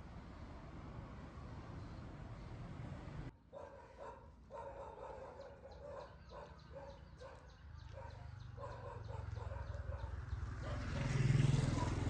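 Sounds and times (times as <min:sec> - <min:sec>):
dog barking: 0:03.5 - 0:12.0.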